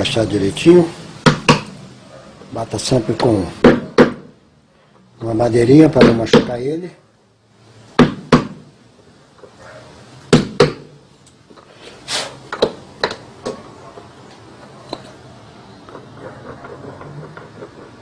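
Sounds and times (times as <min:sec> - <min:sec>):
wood tapping bearing knocks: 0:03.2 - 0:04.3, 0:05.9 - 0:06.6, 0:08.0 - 0:08.6, 0:10.3 - 0:10.9.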